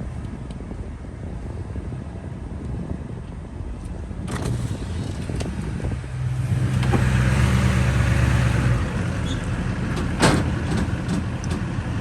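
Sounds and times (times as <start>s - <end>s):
diesel pickup engine running: 3.4s - 12.0s.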